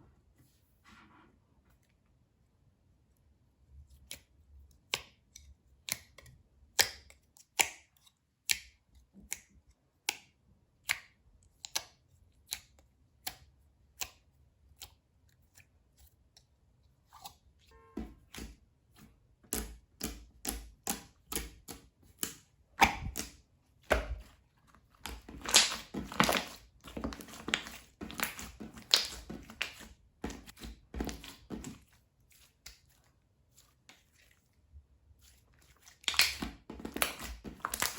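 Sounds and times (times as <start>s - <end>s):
slime clicking and popping: 19.5s - 24.3s, 25.0s - 31.7s, 36.0s - 37.9s.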